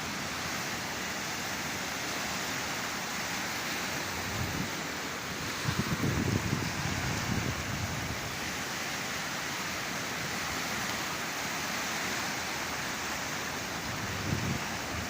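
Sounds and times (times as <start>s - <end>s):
sea surf rushing: 0.0s - 15.0s.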